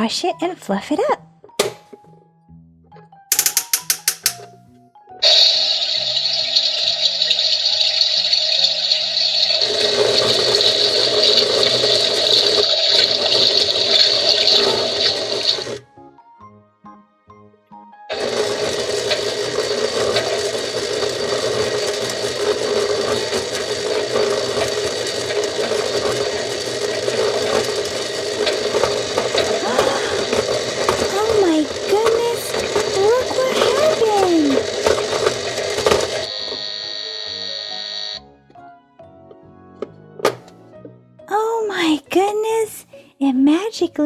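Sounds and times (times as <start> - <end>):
toy washing machine churning: 3.3 - 4.5, 5.2 - 15.8, 18.1 - 38.2
faint electronic tones: 35.8 - 38.2.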